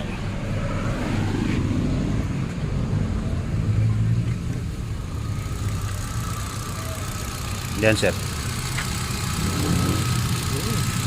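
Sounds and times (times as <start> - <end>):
car engine idling: 0.0 - 1.0, 2.2 - 11.0.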